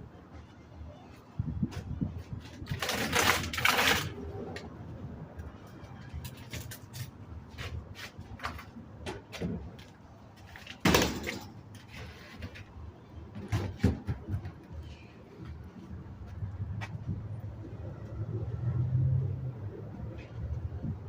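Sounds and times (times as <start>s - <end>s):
knocks and clattering: 8.4s - 12.7s.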